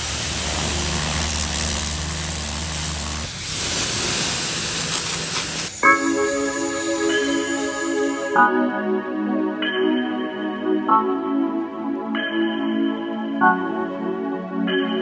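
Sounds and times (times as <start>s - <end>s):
motor humming: 0.0s - 5.8s
pressure washer spray hissing: 0.0s - 8.4s
music: 5.8s - 15.0s.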